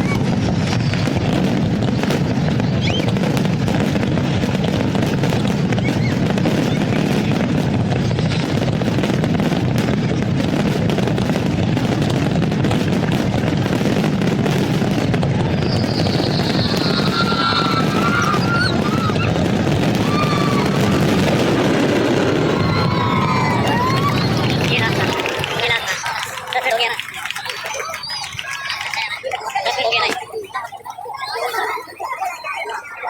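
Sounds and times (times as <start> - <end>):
fireworks crackling and popping: 0.0 - 31.3
high whistle-like tone: 15.6 - 19.3.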